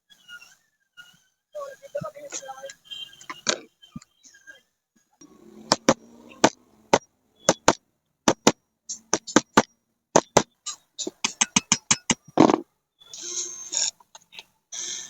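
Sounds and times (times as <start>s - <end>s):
sharp knocks and clicks: 5.7s - 12.7s.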